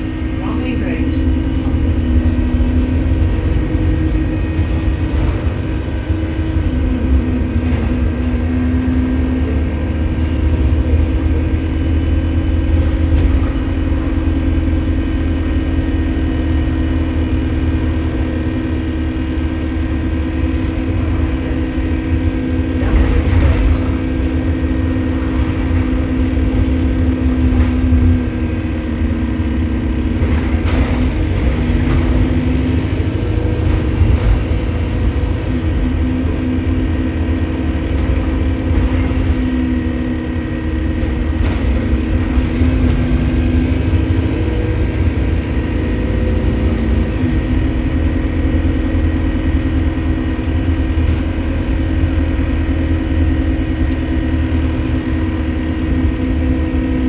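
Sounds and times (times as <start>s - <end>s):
bus engine rumble: 0.0s - 57.0s.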